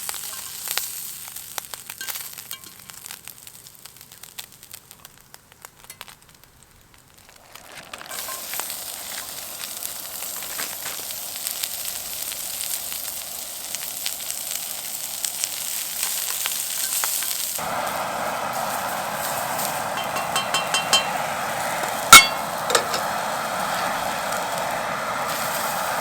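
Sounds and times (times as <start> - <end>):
food sizzling in a hot pan: 0.0 - 26.0
loud steady noise: 17.6 - 26.0.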